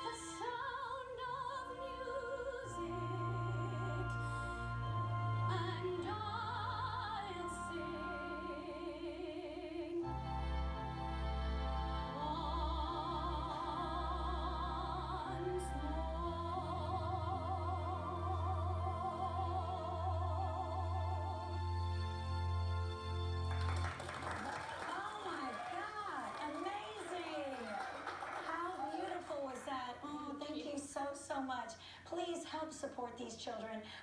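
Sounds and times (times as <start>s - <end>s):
person singing operatically: 0.0s - 22.0s
instrumental accompaniment: 1.6s - 24.4s.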